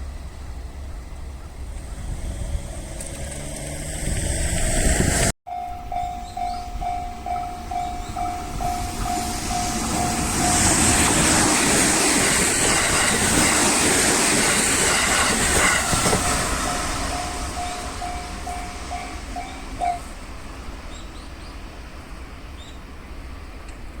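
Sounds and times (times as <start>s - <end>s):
train wheel and rail noise: 0.0s - 24.0s
level crossing warning bell: 5.5s - 11.3s, 16.0s - 20.3s.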